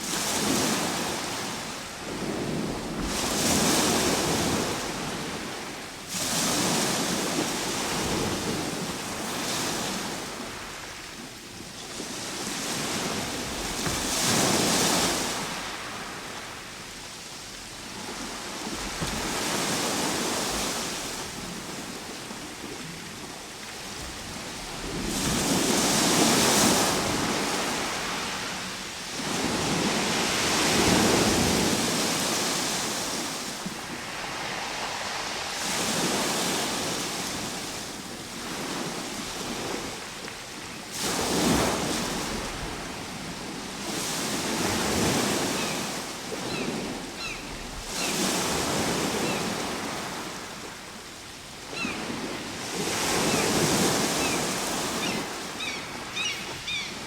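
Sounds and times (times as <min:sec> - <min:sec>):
ocean waves breaking: 0:00.0 - 0:11.2, 0:11.8 - 0:16.9, 0:17.7 - 0:40.1, 0:40.9 - 0:51.0, 0:51.6 - 0:57.0.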